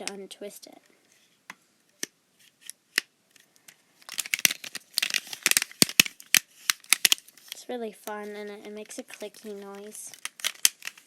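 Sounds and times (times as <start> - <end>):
plastic fidget toy clicking: 4.1 - 7.2.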